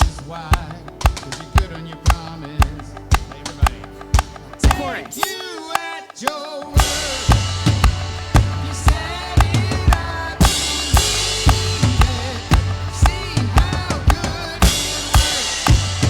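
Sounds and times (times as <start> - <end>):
drum kit playing a groove: 0.0 - 16.0
full band backing track: 6.6 - 16.0.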